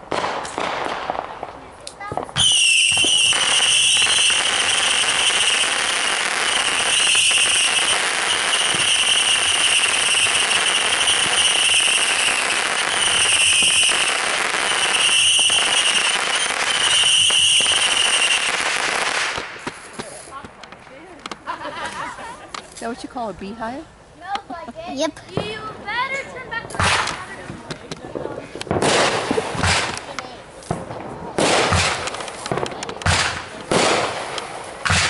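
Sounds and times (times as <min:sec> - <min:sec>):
firework crackling: 0:00.0 - 0:35.0
firework high whistle: 0:02.4 - 0:18.7.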